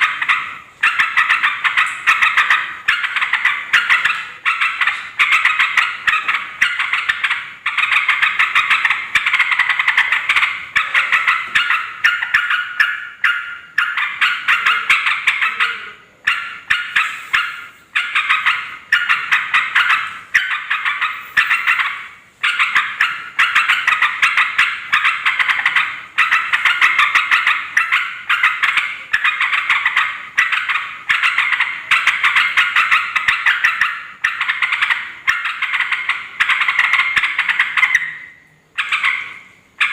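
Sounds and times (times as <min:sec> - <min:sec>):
bulbuls chattering: 0:00.0 - 0:39.9.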